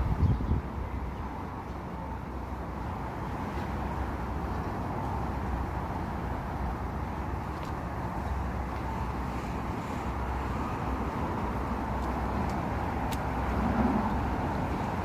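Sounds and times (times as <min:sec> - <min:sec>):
wind rumble on microphone: 0:00.0 - 0:02.1
street traffic: 0:00.0 - 0:15.0.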